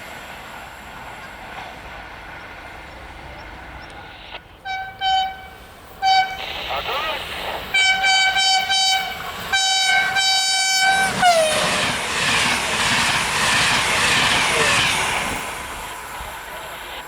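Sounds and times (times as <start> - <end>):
train rumbling on rails: 0.0 - 17.0
train horn blasts: 4.6 - 6.7, 7.7 - 11.8.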